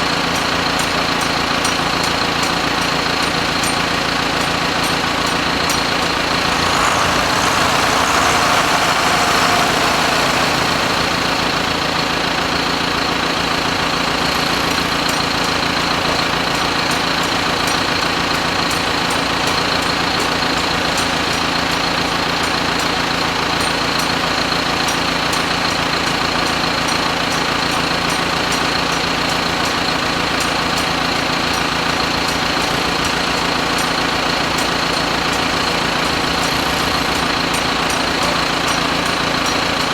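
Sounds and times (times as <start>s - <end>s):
machine humming with high whine: 6.2s - 11.9s.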